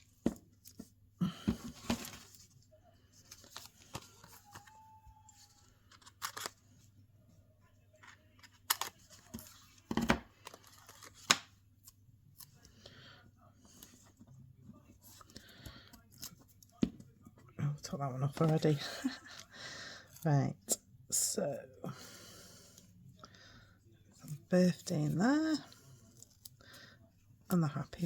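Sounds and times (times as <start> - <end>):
card rustling on desk: 0.1 - 6.9, 7.9 - 12.7.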